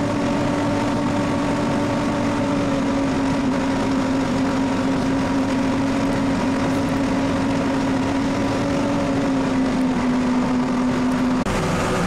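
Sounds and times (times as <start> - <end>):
farm machinery engine droning: 0.0 - 12.0.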